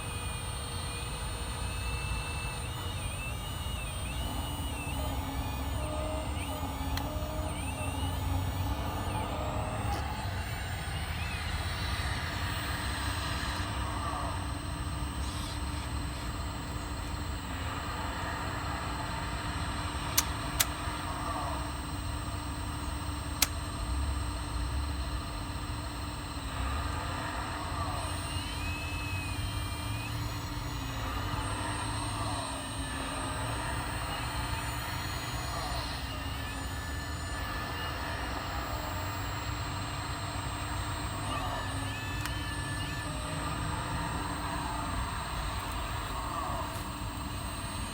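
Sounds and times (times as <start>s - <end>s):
toy excavator whine and hum: 0.0s - 47.9s
sharp clicks: 0.3s - 13.8s, 20.0s - 21.1s, 23.2s - 23.9s, 28.1s - 47.9s.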